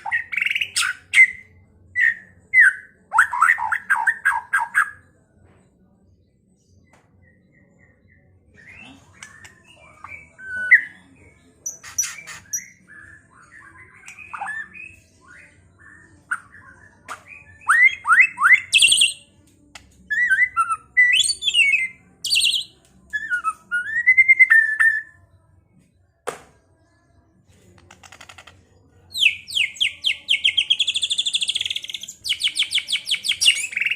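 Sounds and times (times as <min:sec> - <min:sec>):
bird singing whistles and chirps: 0:07.2 - 0:19.2, 0:20.1 - 0:25.2.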